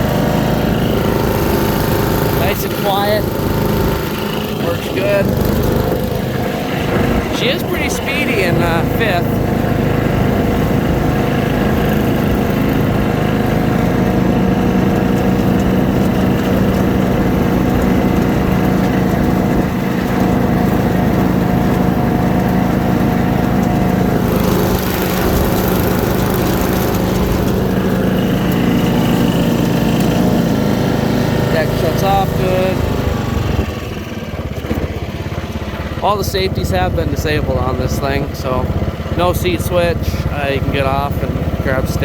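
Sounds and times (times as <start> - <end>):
riding lawn mower running: 0.0 - 42.0.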